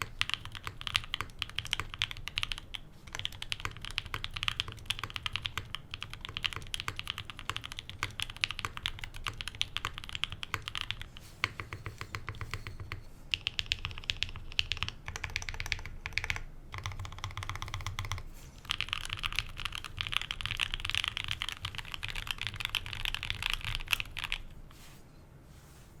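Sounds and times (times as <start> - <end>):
mechanical keyboard typing: 0.0 - 24.4
faint fan noise: 0.0 - 26.0.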